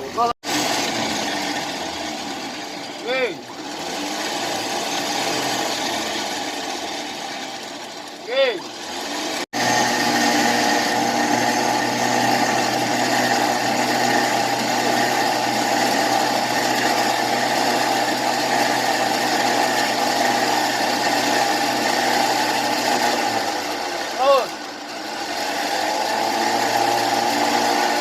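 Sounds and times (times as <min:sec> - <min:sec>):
off-road vehicle engine running: 0:00.0 - 0:28.0.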